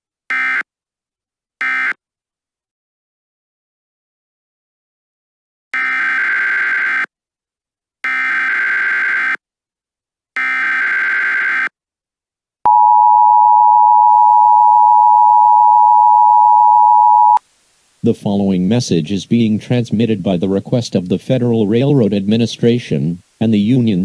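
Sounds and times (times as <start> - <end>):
two-tone attention signal: 12.7 - 17.4.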